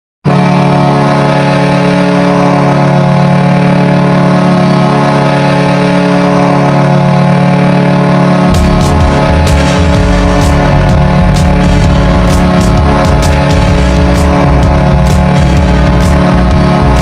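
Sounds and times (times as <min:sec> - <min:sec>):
hockey goal horn: 0:00.3 - 0:17.0
music with heavy beat: 0:08.5 - 0:17.0.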